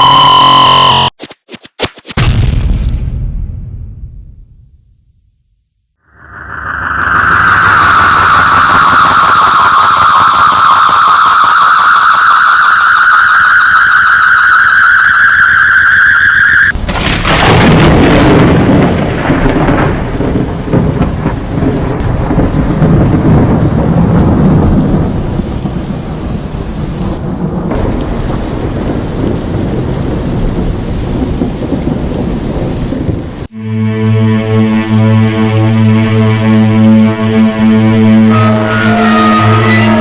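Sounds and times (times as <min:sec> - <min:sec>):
fluttering electronic alarm tone: 0:00.0 - 0:01.1, 0:06.2 - 0:16.8, 0:38.3 - 0:40.0
rolling thunder: 0:06.1 - 0:33.5
thunderclap: 0:06.1 - 0:33.5
heavy rain: 0:06.1 - 0:33.6, 0:37.8 - 0:40.0.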